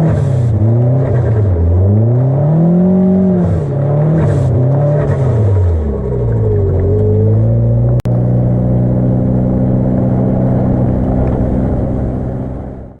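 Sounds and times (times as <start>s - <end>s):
car engine running: 0.0s - 13.0s.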